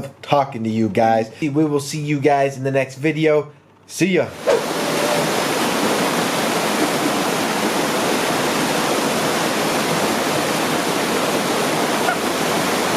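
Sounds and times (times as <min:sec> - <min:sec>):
rush of falling water: 0:04.4 - 0:12.9.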